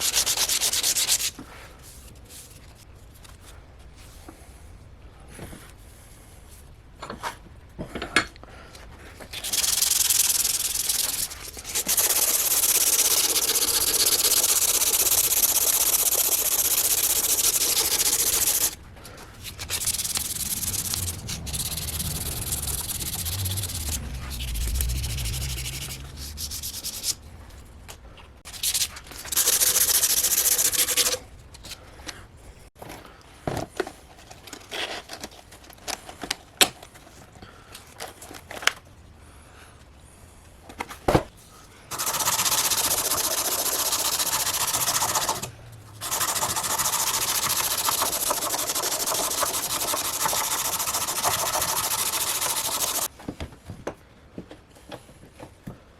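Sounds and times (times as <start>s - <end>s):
abrasive sanding: 0.0s - 1.4s, 9.4s - 18.8s, 19.4s - 27.3s, 28.5s - 31.2s, 41.9s - 53.1s.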